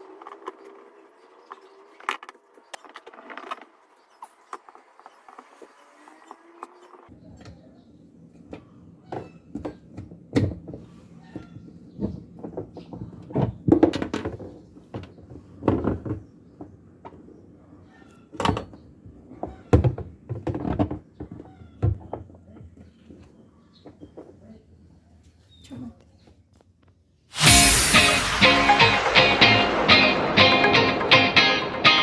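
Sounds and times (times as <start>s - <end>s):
steady low hum: 27.4s - 32.0s.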